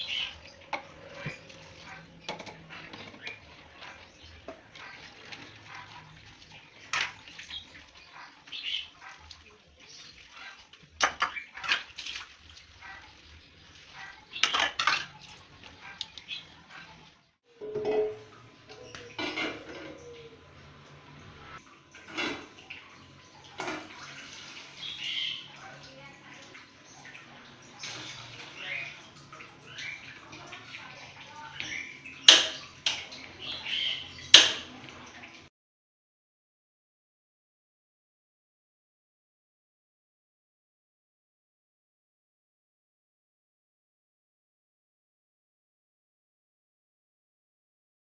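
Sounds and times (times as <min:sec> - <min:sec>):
dishes and utensils clattering: 0:00.0 - 0:13.1, 0:13.8 - 0:35.4
water running and splashing: 0:00.0 - 0:35.5
clinks and knocks: 0:02.3 - 0:03.4, 0:17.6 - 0:20.0.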